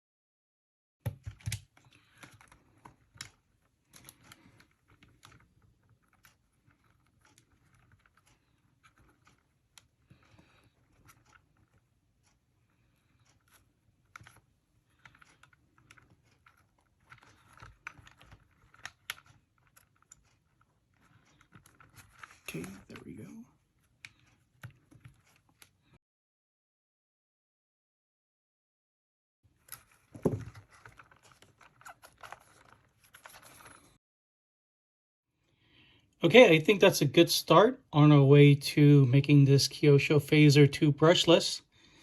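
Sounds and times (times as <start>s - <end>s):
small plastic parts clicking: 1.0s - 12.4s, 13.2s - 23.0s.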